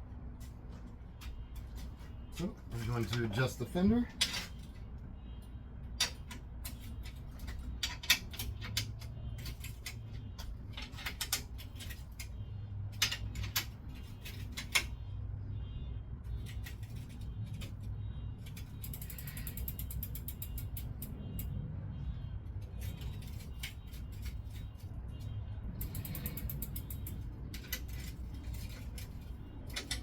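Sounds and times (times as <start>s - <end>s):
metal clicks and ratcheting: 5.8s - 15.1s, 16.2s - 21.6s, 22.4s - 30.0s.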